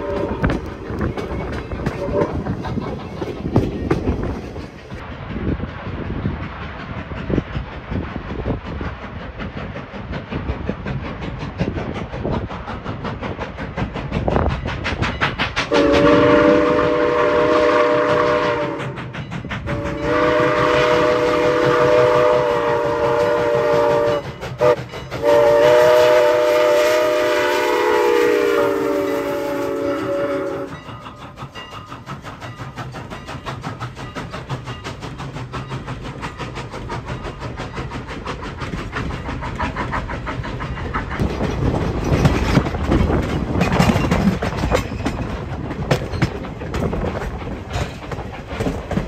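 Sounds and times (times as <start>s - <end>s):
steam locomotive chime whistle: 0.0s - 2.4s, 15.7s - 31.9s
steam train rattling on rails: 0.0s - 49.0s.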